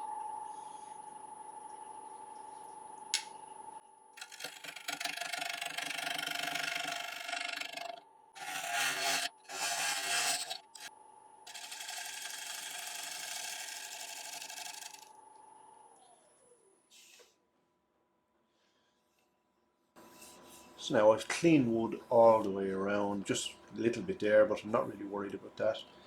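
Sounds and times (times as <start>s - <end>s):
gouge cutting wood on lathe: 4.2s - 10.9s, 11.5s - 15.1s
lathe whine: 4.2s - 10.9s, 11.5s - 15.1s.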